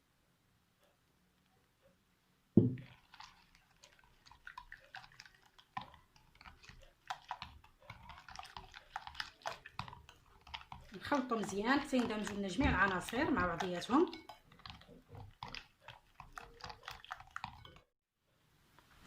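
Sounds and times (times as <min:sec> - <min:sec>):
knock: 0:02.6 - 0:02.8
batter sloshing while stirred: 0:02.8 - 0:18.0.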